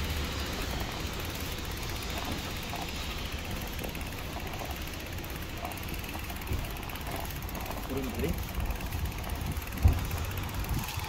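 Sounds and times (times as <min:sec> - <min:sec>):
low vehicle rumble: 0:00.0 - 0:11.0.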